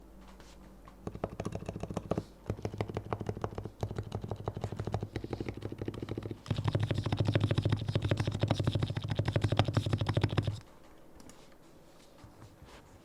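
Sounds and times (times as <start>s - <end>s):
keyboard typing: 1.0s - 10.6s.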